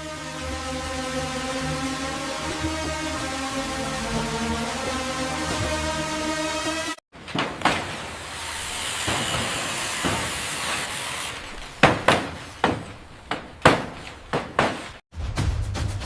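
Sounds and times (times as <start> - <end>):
sharp knocks: 7.1 - 15.0.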